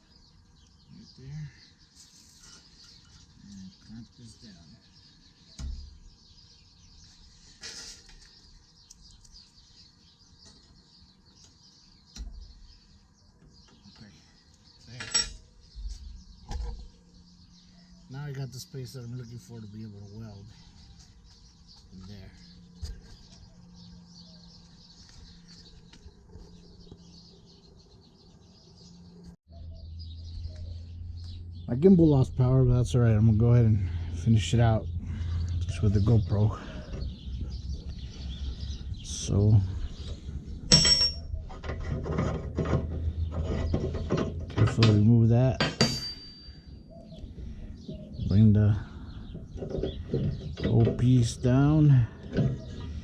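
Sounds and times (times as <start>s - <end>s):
birds chirping faintly: 0.0s - 53.0s
low steady hum: 28.9s - 53.0s
scraping rasp: 41.3s - 44.8s.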